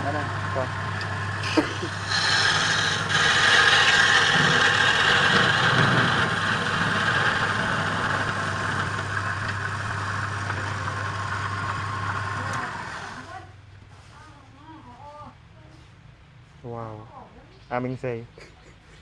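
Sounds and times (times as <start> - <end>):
lathe motor hum: 0.0 - 13.3
turning tool cutting wood: 0.0 - 13.3.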